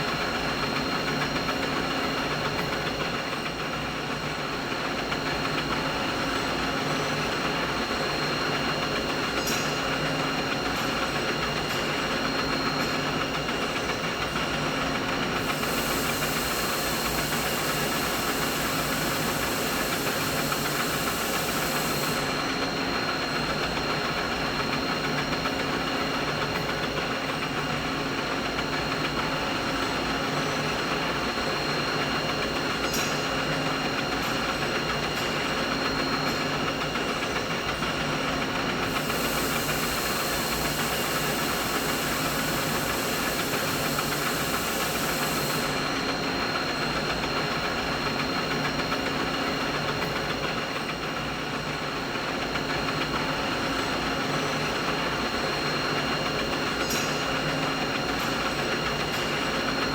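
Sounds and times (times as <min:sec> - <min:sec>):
machine hum with whining tones: 0:00.0 - 0:59.9
high hiss: 0:15.4 - 0:22.4, 0:38.8 - 0:46.0.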